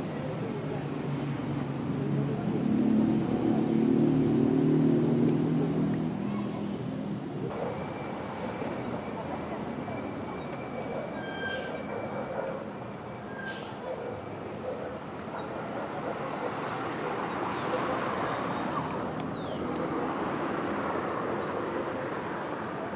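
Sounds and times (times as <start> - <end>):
steady noisy background: 0.0 - 22.9
birds chirping: 5.2 - 22.9.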